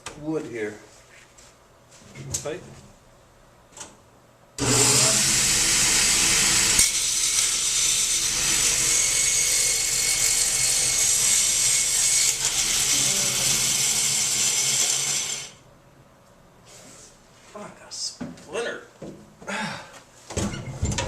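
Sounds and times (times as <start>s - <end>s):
table saw cutting wood: 4.6s - 15.6s.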